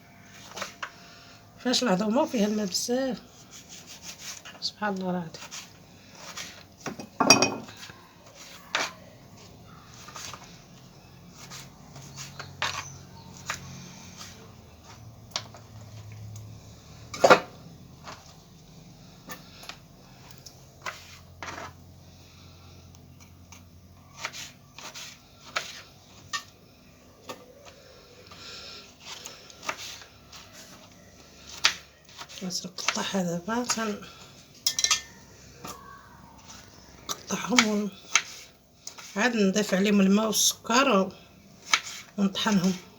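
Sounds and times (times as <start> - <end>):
utensils and dishes clinking: 6.9 - 7.8, 34.6 - 35.3.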